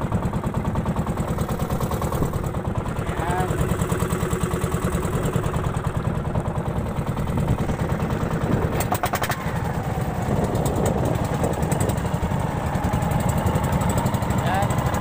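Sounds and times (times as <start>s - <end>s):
boat engine chugging: 0.0s - 15.0s.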